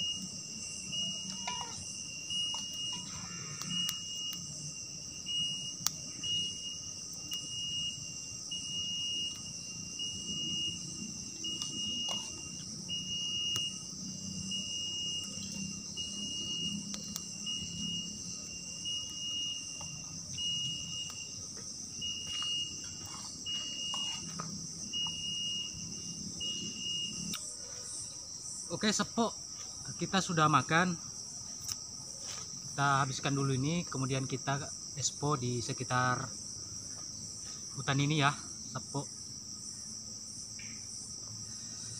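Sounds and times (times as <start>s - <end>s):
shrill insect note: 0.0s - 27.6s
insects buzzing: 0.0s - 41.9s.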